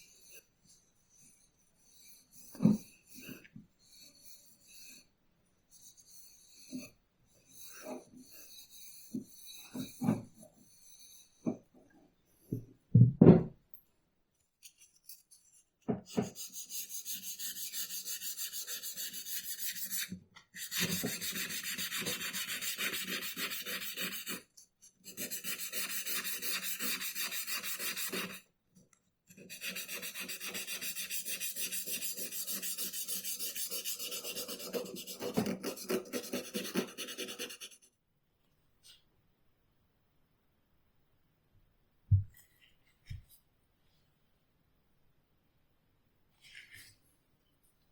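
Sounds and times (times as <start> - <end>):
file scraping an ax: 29.3 - 37.8.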